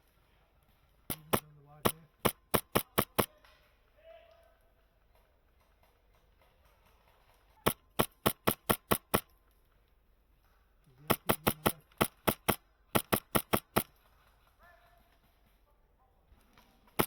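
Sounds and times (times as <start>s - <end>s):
airsoft rifle shots: 1.1s - 3.5s, 7.6s - 9.4s, 11.0s - 14.1s.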